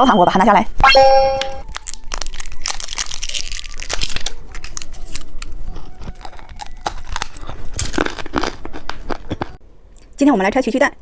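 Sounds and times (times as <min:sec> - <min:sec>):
plastic wrapper crinkling and tearing: 0:01.6 - 0:09.6.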